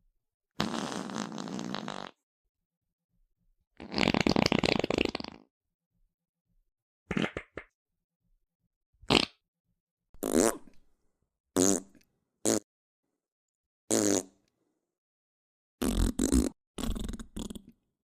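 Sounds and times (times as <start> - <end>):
fart sound effects: 0.6 - 2.2, 3.8 - 5.5, 9.1 - 9.4, 15.8 - 17.6.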